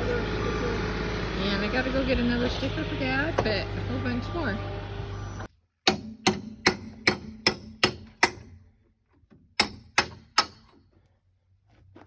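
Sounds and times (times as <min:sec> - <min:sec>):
hammer driving nails into wood: 0:05.8 - 0:08.6, 0:09.3 - 0:10.8.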